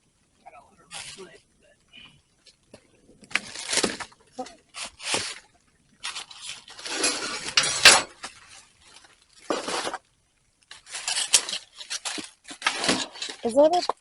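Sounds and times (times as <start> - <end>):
plastic bags rustling: 0.8 - 14.0
packaged items clinking and knocking: 10.7 - 14.0.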